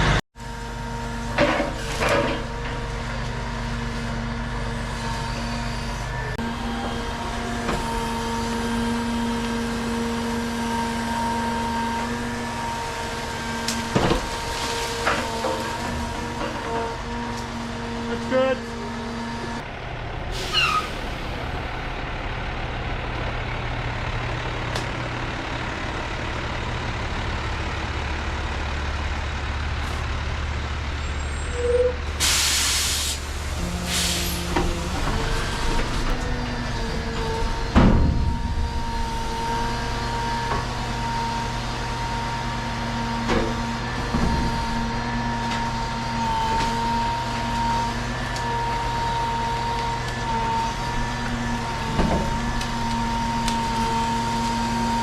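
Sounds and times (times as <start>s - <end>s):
heavy truck running: 0.0s - 55.0s
air brakes hissing: 20.3s - 21.6s, 31.2s - 35.6s.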